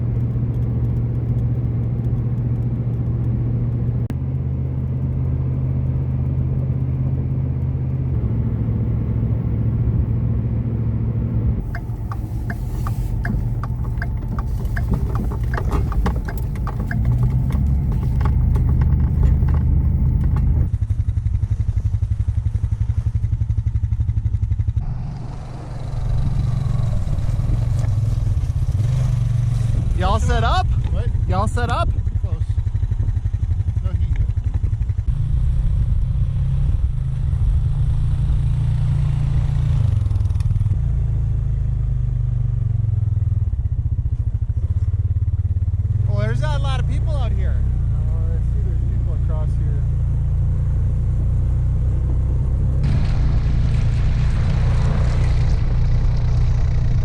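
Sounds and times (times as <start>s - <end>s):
rapid clicking and clatter: 0.0s - 8.2s, 11.6s - 20.7s
vehicle engine running: 0.0s - 57.0s.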